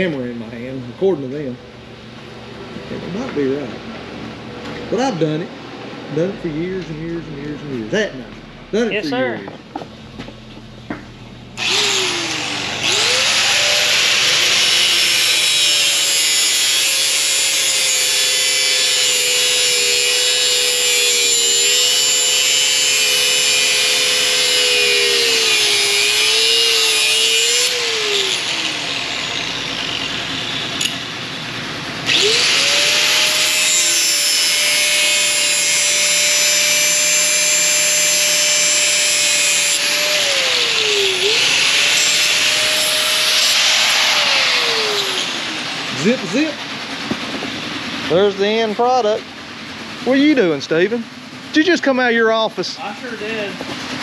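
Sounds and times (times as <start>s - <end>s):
electric power tool cutting: 11.6s - 31.0s, 32.0s - 47.2s.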